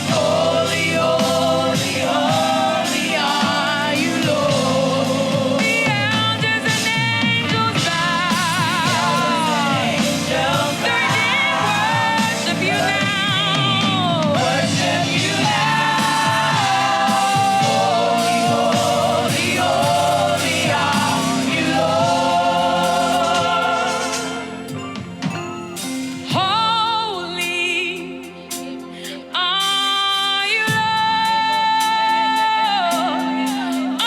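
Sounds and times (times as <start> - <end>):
backing voices singing: 0.0 - 26.7
band accompaniment: 0.0 - 34.0
lead voice singing with vibrato: 0.0 - 34.0.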